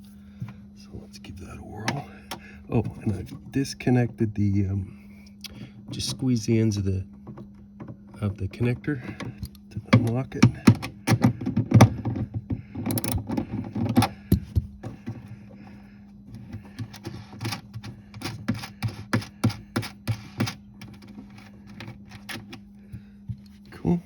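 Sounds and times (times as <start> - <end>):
steady low hum: 0.0 - 24.0
hand tool clicking and knocking: 9.1 - 15.0.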